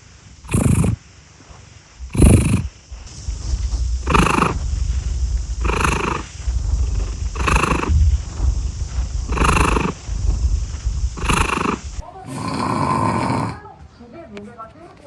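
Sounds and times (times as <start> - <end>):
cat purring: 0.5 - 1.0, 2.0 - 2.7, 4.0 - 4.7, 5.6 - 8.2, 9.0 - 10.1, 11.1 - 13.7.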